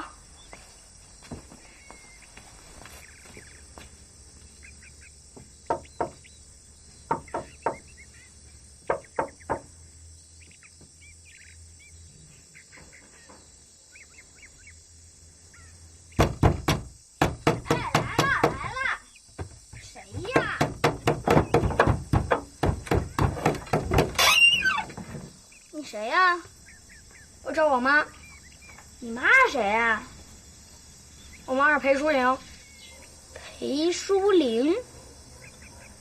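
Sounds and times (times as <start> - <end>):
birds chirping faintly: 0.0 - 36.0
loud knocks on a door: 5.7 - 6.2, 7.1 - 7.8, 8.8 - 9.7, 16.2 - 18.8, 19.4 - 24.2.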